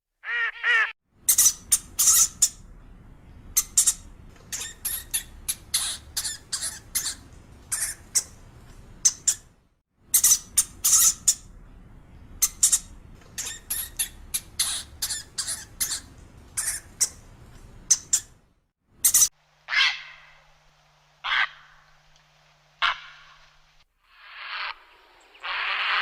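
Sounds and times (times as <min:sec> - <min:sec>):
animal high-pitched calls: 0:00.2 - 0:01.0, 0:19.7 - 0:20.4, 0:21.2 - 0:21.8, 0:22.8 - 0:23.4, 0:25.4 - 0:26.0.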